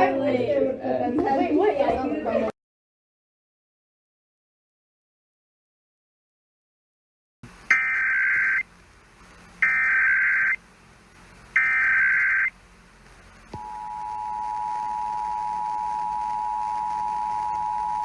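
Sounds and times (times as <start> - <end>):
warbling data tone bursts: 7.6 - 8.7, 9.5 - 10.6, 11.5 - 12.6
two-tone attention signal: 7.7 - 8.6, 9.6 - 10.6, 11.6 - 12.5, 13.6 - 18.0.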